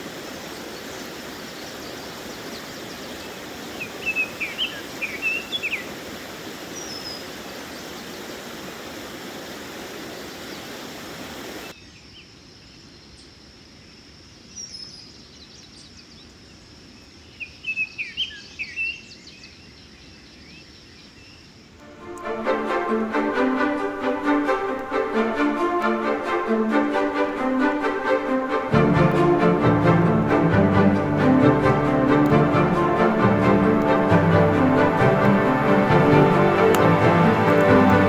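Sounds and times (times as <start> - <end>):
songbird singing: 0.0 - 9.0, 14.5 - 38.0
music: 21.8 - 38.0
steady rushing noise: 21.8 - 38.0.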